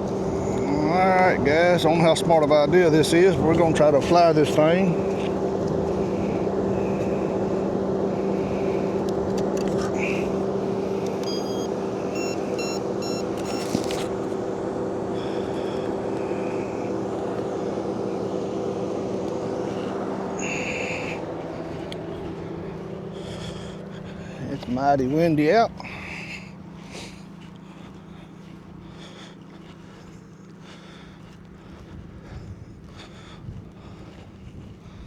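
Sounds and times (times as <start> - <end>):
low mechanical hum: 0.0 - 35.0
short electronic beeps: 11.2 - 13.9.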